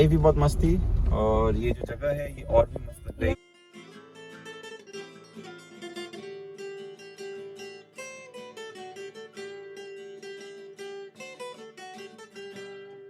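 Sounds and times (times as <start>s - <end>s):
acoustic guitar music: 0.0s - 13.0s.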